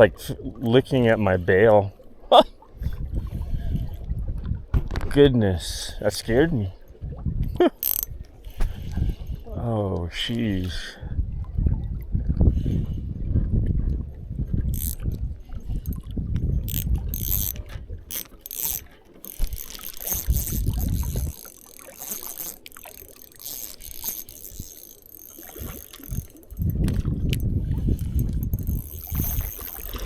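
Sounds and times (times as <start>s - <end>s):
fishing reel clicking: 7.8s - 9.0s, 14.7s - 16.0s, 16.6s - 30.0s.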